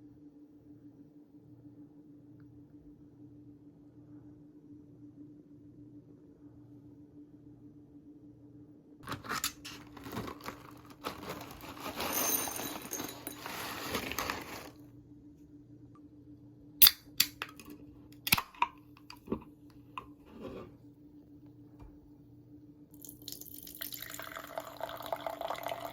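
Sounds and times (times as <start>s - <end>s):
packaging rustling and tearing: 9.0s - 14.8s.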